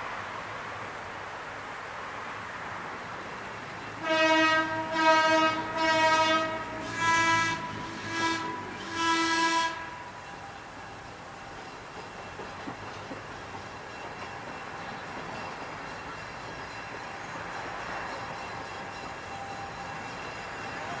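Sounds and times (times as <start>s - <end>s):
low rumble of train: 0.0s - 21.0s
locomotive air horn blasts: 4.0s - 10.3s.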